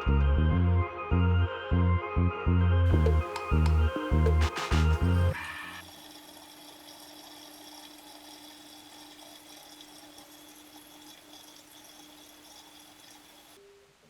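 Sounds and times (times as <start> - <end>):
water running into washing machine: 2.9 - 13.6.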